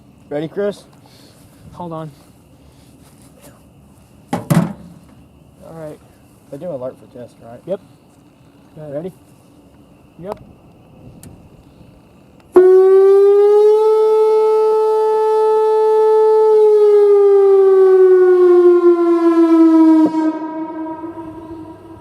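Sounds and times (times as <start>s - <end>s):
warning siren tone: 12.5s - 22.0s.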